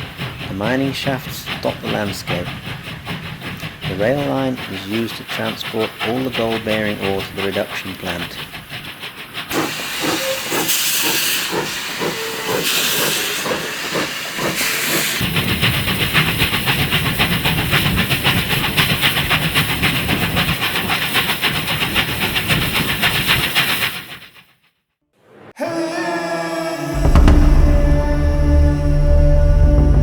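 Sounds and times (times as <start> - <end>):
hissing steam bursts: 0.0 - 24.3
steam locomotive exhaust beating: 0.0 - 24.4, 26.9 - 30.0.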